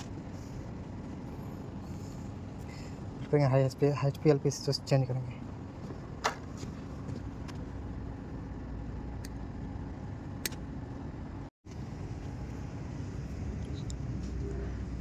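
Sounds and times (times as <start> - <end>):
low machinery hum: 0.0 - 15.0.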